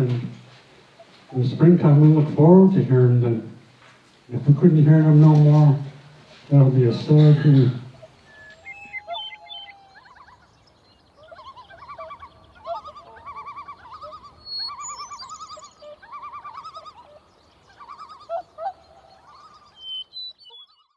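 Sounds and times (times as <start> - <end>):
birds trilling: 0.0 - 20.9
high bird chirps: 7.9 - 20.9.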